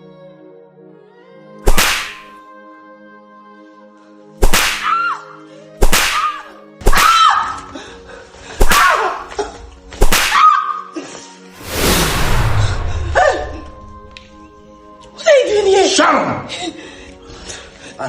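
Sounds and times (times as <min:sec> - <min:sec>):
background music: 0:00.0 - 0:18.0
whip strikes: 0:01.6 - 0:02.3, 0:04.4 - 0:05.0, 0:05.8 - 0:07.2, 0:08.6 - 0:09.2, 0:10.0 - 0:10.5
whoosh: 0:11.6 - 0:14.1.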